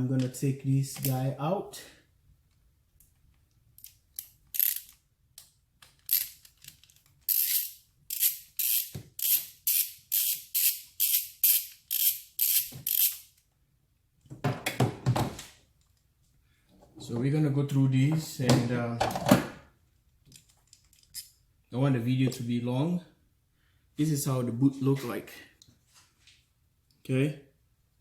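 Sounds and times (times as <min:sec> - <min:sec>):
hand ratchet clicking: 0:03.8 - 0:13.4.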